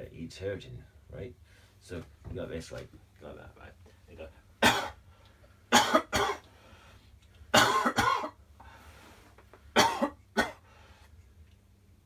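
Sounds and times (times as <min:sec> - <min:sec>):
person coughing: 0:04.6 - 0:05.0, 0:05.7 - 0:06.4, 0:07.6 - 0:08.4, 0:09.8 - 0:10.6.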